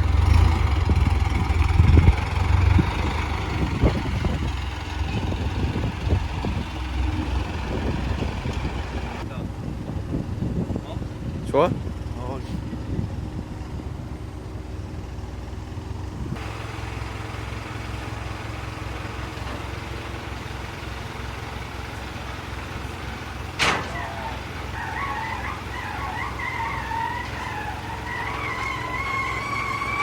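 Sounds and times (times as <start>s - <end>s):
vehicle engine idling: 0.0s - 30.0s
high-pitched squeal: 23.6s - 30.0s.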